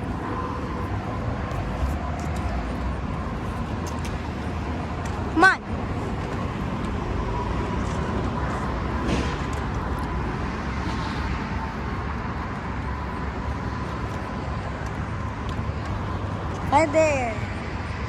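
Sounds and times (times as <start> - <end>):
low road rumble: 0.0 - 18.0.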